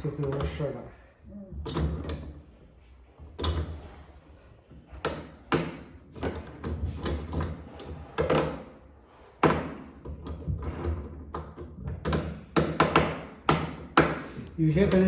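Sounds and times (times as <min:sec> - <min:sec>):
hose fitting knocks and clunks: 0:03.2 - 0:04.0, 0:04.8 - 0:08.7, 0:09.4 - 0:15.0.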